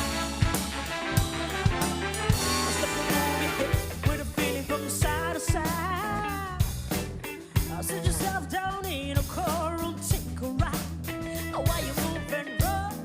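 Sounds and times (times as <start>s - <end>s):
bending lead melody: 0.0s - 8.6s
bass line: 0.0s - 13.0s
drum kit groove: 0.0s - 13.0s.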